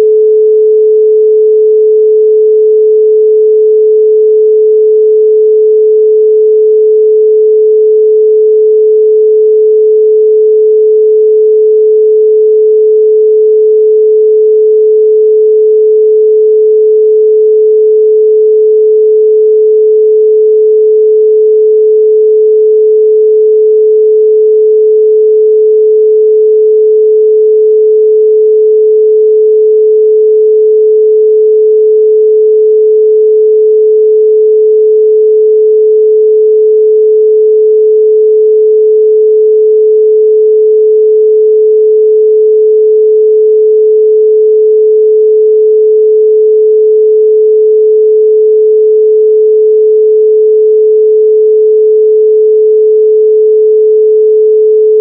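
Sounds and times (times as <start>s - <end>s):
steady pure sine tone: 0.0s - 55.0s.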